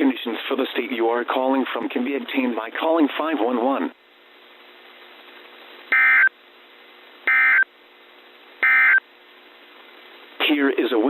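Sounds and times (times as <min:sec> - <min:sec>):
buzzy digital data bursts: 0:08.6 - 0:09.0.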